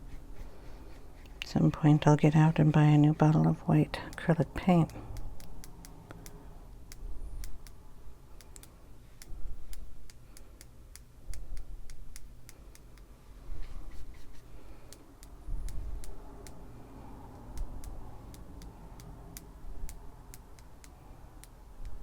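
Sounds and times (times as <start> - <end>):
paintbrush tapping clicks: 1.2 - 7.8, 8.4 - 13.1.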